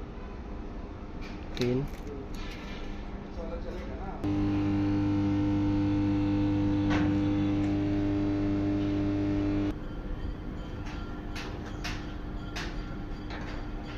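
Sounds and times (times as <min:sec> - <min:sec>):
steady electrical hum: 0:00.8 - 0:09.8.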